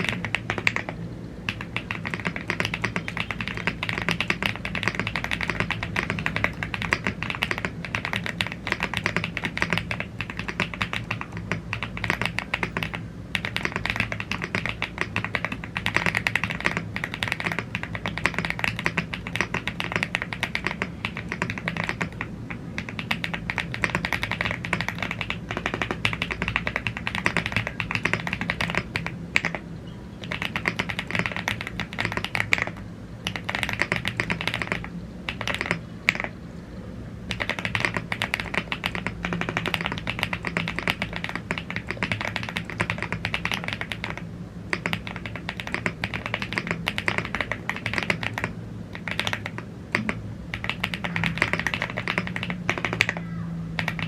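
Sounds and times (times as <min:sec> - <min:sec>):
mechanical keyboard typing: 0:00.0 - 0:36.4, 0:37.3 - 0:54.0.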